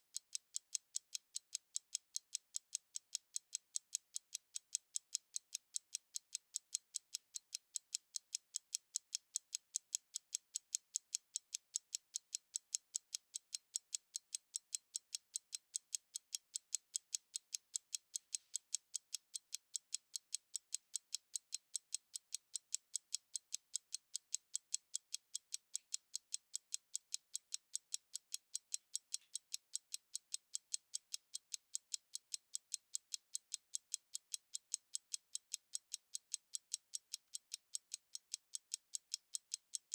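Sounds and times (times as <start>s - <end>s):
stopwatch ticking: 0.0s - 39.9s.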